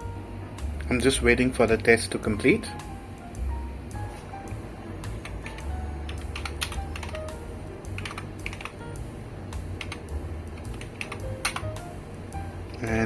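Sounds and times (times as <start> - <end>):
soft background music: 0.0 - 13.0
keyboard typing clicks: 5.2 - 7.4, 8.0 - 8.8, 9.8 - 11.8.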